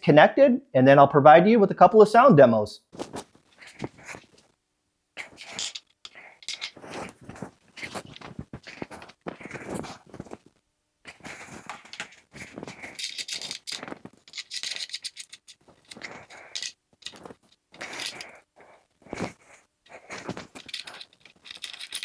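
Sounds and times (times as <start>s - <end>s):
speaker wire rattling and clicking: 11.4s - 18.3s, 20.1s - 22.0s.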